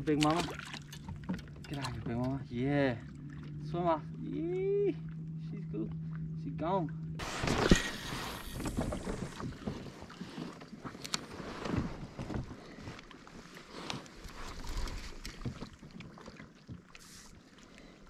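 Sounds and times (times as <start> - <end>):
water splashing around kayak: 0.0 - 18.0.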